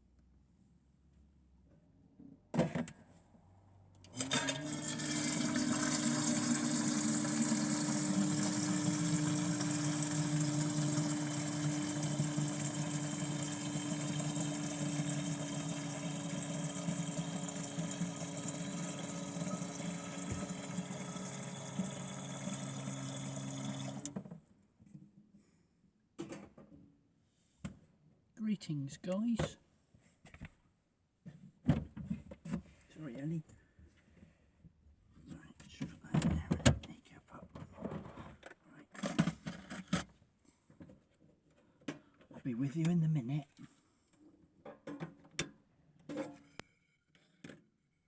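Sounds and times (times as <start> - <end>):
small motor whirring: 4.1 - 24.2.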